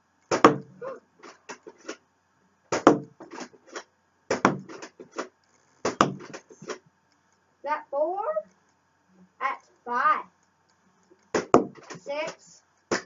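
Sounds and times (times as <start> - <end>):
sharp knocks and clicks: 0.2 - 2.0, 2.7 - 7.4, 10.4 - 13.0.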